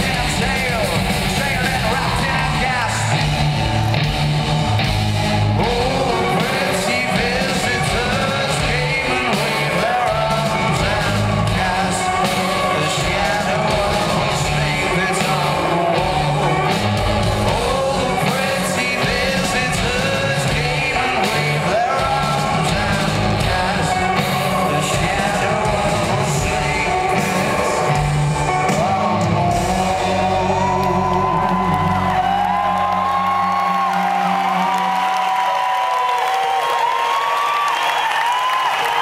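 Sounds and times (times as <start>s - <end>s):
live rock band playing: 0.0s - 35.7s
person singing or shouting: 5.5s - 34.2s.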